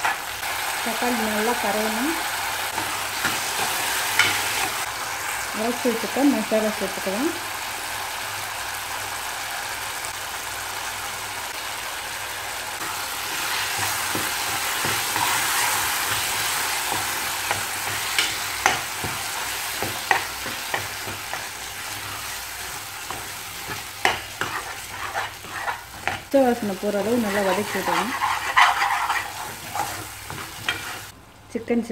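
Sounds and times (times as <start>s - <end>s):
spoon scraping and knocking pan: 0.0s - 0.3s, 2.7s - 4.9s, 12.8s - 31.1s
paste sizzling in hot oil: 0.0s - 31.2s.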